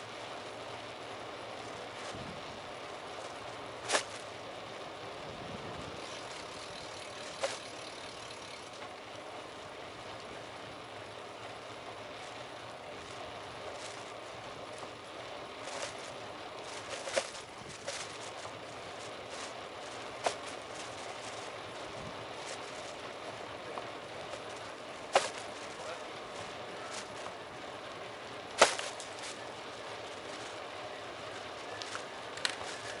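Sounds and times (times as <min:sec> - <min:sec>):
bicycle riding noise on street: 0:00.0 - 0:33.0
sharp rattles: 0:01.5 - 0:09.0, 0:12.0 - 0:33.0.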